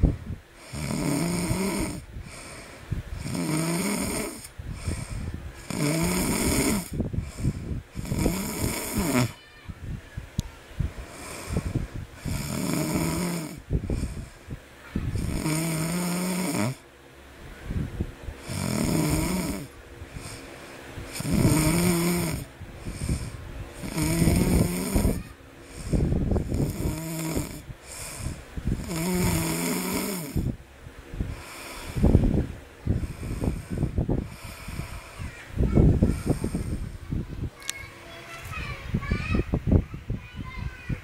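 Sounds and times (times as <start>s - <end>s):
baby snoring: 0.6s - 9.4s, 11.1s - 14.4s, 15.1s - 16.8s, 18.4s - 20.4s, 21.1s - 30.6s, 31.4s - 32.2s, 32.9s - 35.3s, 36.0s - 37.0s.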